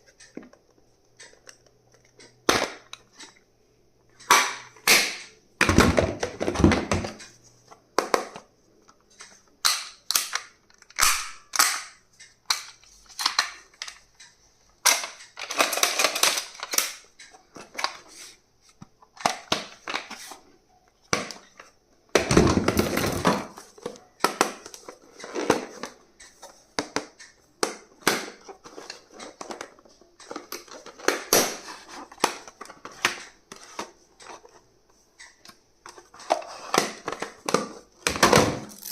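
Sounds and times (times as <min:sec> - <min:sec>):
sharp plastic clicks and snaps: 0:08.0 - 0:18.0.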